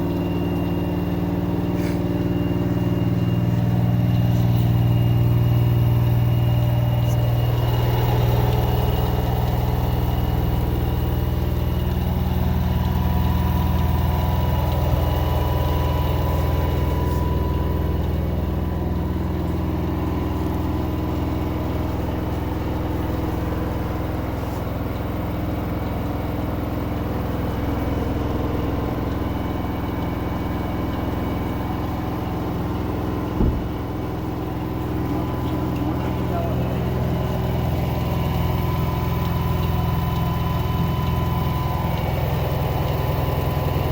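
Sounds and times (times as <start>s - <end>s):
washing machine motor humming: 0.0s - 43.9s
short knock: 33.3s - 33.9s.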